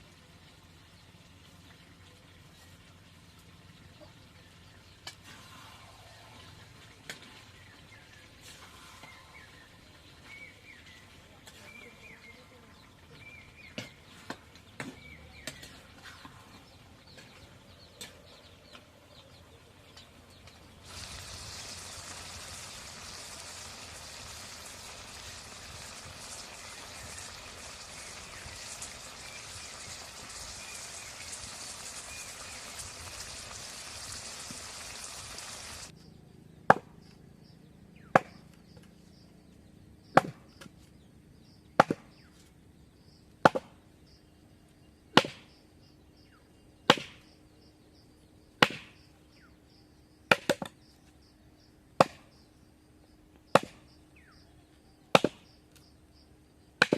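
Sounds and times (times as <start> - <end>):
steady hiss: 20.3 - 35.9.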